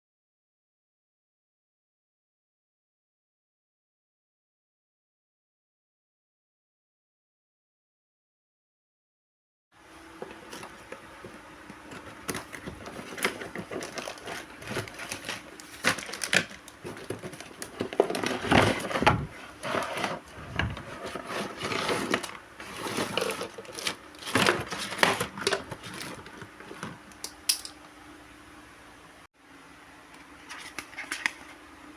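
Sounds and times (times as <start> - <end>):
plastic and cardboard crinkling: 10.2 - 27.1, 30.4 - 31.6
clicks and crackles: 12.2 - 19.1, 23.0 - 27.9.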